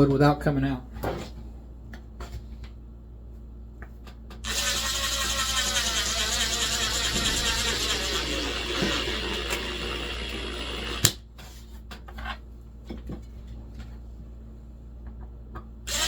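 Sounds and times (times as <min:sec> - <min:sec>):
power drill driving screw: 0:04.4 - 0:11.2.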